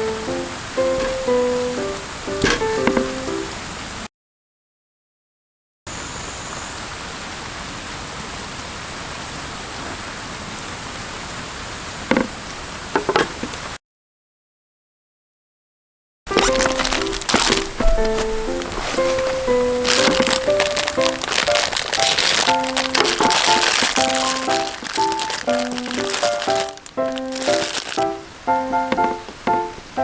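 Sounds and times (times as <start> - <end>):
melody of held notes: 0.0 - 3.6
steady rain falling: 0.0 - 4.1, 5.9 - 13.8, 16.3 - 30.0
crackly clicks: 16.3 - 29.6.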